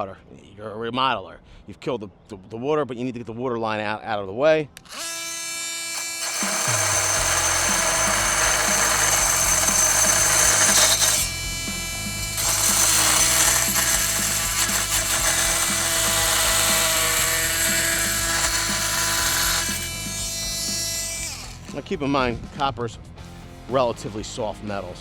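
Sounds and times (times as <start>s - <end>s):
multi-tool cutting metal pipe: 4.8s - 21.8s.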